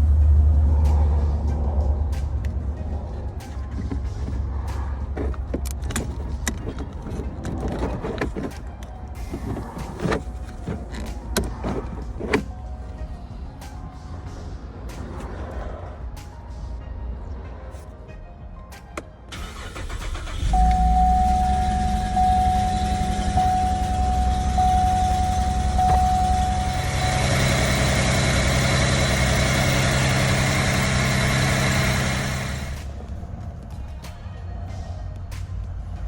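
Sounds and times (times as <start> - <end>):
car engine starting and running: 2.2 - 12.8, 19.3 - 33.0
repeating dashboard chime: 19.5 - 32.8.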